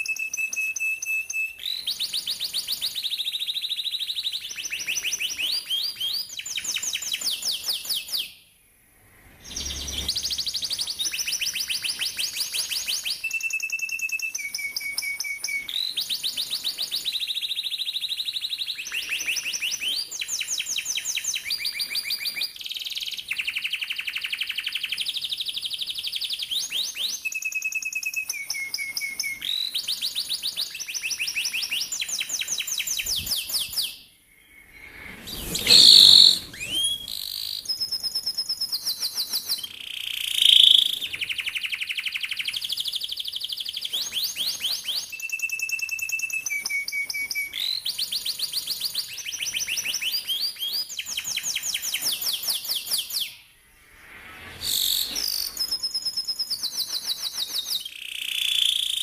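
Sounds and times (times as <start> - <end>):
canary singing trills: 9.4 - 17.8, 30.6 - 38.0, 38.7 - 46.2.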